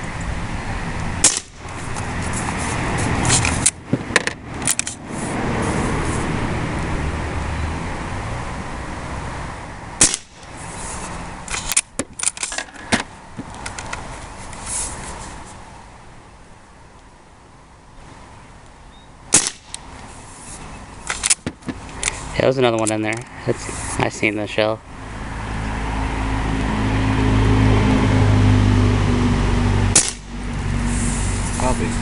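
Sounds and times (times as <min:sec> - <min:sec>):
air rifle shot pop: 0:01.2 - 0:01.6, 0:10.0 - 0:10.4, 0:19.3 - 0:19.7, 0:30.0 - 0:30.3.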